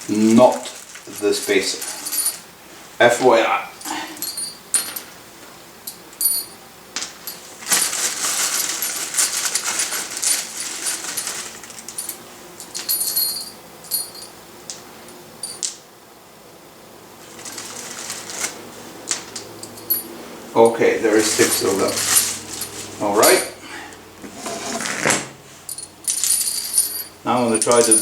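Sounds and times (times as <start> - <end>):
rustling: 0.0 - 2.9, 7.2 - 14.3, 17.2 - 20.4, 21.0 - 28.0
metal nuts and washers clinking: 0.1 - 2.5, 3.8 - 5.2, 5.8 - 14.4, 15.0 - 15.8, 17.3 - 23.6, 25.7 - 28.0.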